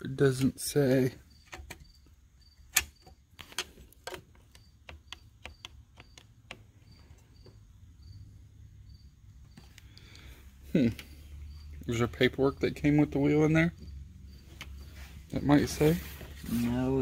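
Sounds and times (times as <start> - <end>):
cricket chirping: 0.7 - 16.0
hands clicking and tapping parts: 2.7 - 7.7, 9.4 - 11.1, 13.8 - 14.9.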